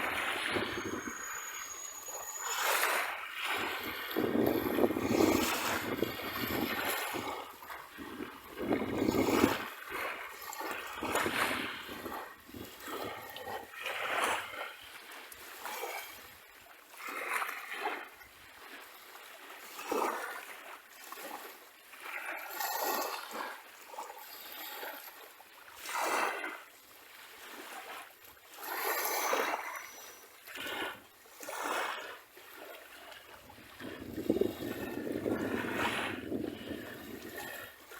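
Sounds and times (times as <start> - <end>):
sea waves splashing on beach: 0.0 - 37.9.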